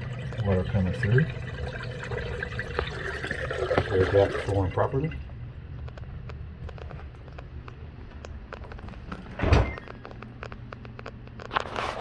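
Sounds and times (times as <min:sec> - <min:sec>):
dishwasher drain pump humming: 0:00.0 - 0:05.7.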